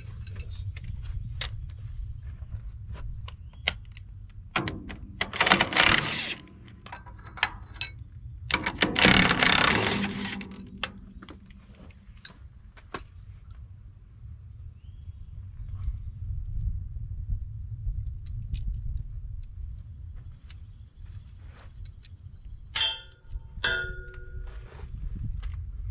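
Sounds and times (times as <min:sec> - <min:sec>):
sharp clicks: 0:03.6 - 0:07.9
loud tool rattling: 0:04.6 - 0:07.9, 0:08.5 - 0:12.2
metal hand tools clattering: 0:05.0 - 0:12.0, 0:22.8 - 0:24.5.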